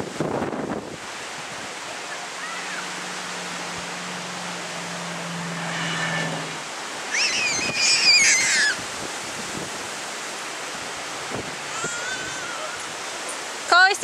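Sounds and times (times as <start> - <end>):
wind rushing over microphone: 0.0 - 13.3
child squealing: 2.4 - 2.8, 7.1 - 8.8, 11.7 - 12.9.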